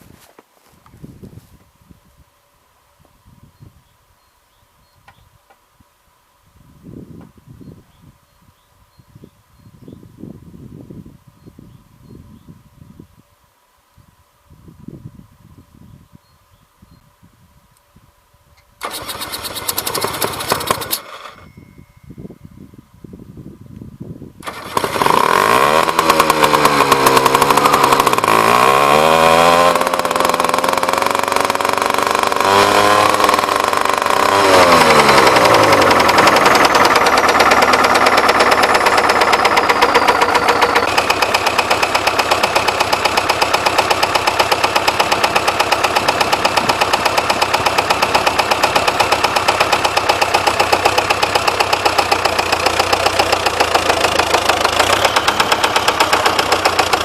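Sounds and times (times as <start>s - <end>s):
diesel tractor engine revving: 18.8s - 21.4s, 24.4s - 57.0s
engine knocking: 18.8s - 21.4s, 24.4s - 57.0s.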